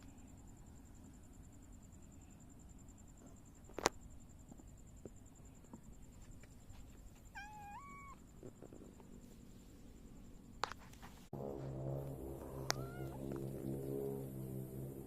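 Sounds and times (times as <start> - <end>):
cat meowing: 7.3 - 8.2, 12.5 - 13.4.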